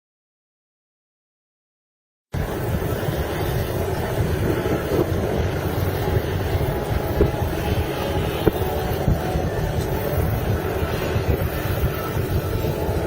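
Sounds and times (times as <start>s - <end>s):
helicopter drone: 2.4s - 13.0s
wind buffeting microphone: 2.4s - 13.0s.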